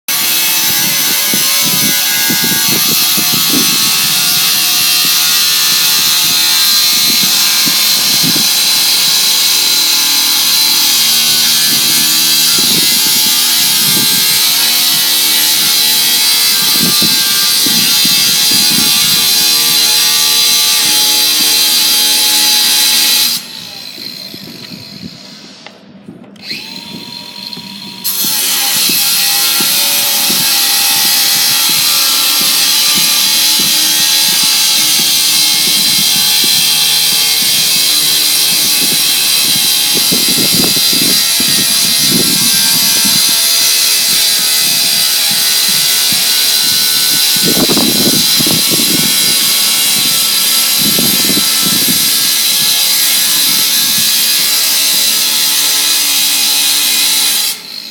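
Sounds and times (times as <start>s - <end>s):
circular saw whining: 0.1s - 57.9s.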